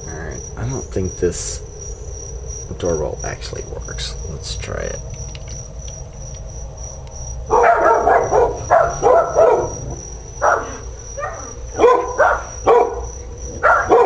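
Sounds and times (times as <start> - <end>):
dogs barking: 7.4 - 14.0.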